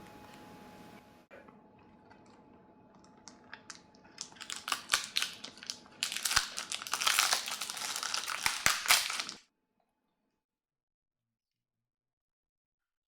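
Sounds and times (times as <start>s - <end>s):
crinkling and crackling: 3.0s - 9.4s.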